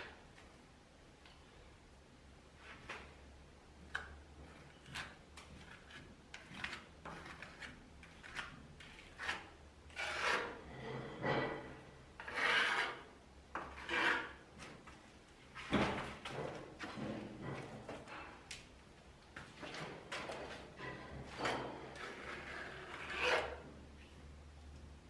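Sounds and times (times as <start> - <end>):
tool scraping plaster wall: 3.9 - 14.8, 19.6 - 23.8.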